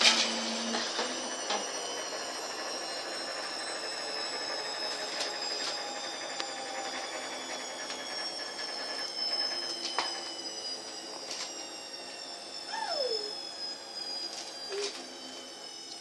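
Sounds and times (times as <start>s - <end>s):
washing machine running: 0.0s - 16.0s.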